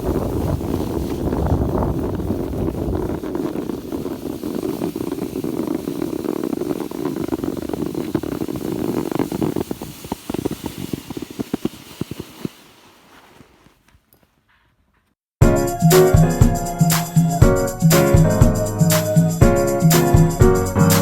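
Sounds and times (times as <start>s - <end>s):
sled runners scraping over snow: 0.0s - 15.2s.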